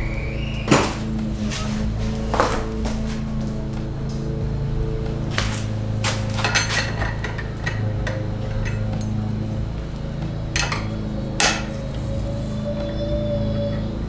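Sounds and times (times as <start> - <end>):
background music with bass: 0.0 - 14.0.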